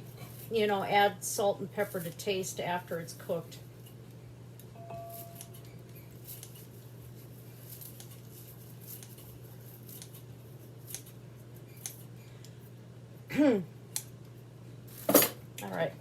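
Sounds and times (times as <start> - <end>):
scissors snipping: 5.3 - 5.7, 8.8 - 9.3, 9.9 - 11.2, 11.8 - 12.0.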